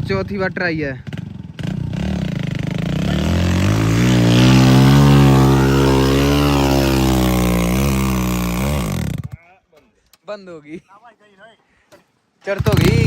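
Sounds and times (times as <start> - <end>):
diesel engine revving under load: 1.6 - 9.3.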